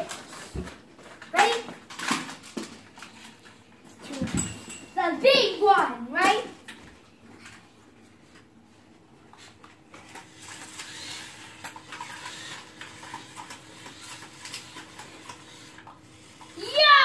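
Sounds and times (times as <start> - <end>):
toy cars clattering: 1.0 - 5.6, 9.5 - 16.9.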